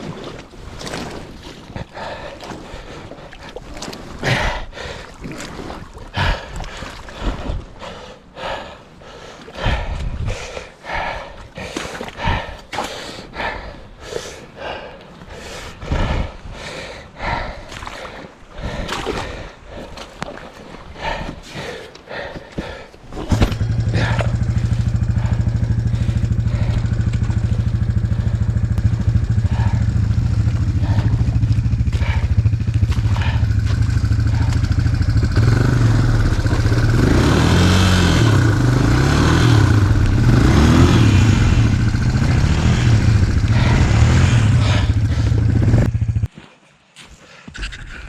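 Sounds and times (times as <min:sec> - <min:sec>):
atv engine revving: 0:23.3 - 0:46.3.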